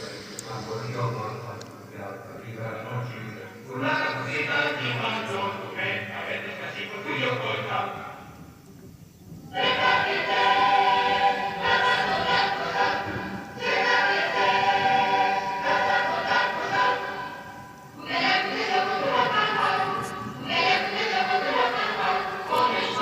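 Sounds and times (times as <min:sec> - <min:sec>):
choir singing long held notes: 0:00.0 - 0:01.6, 0:09.5 - 0:23.0.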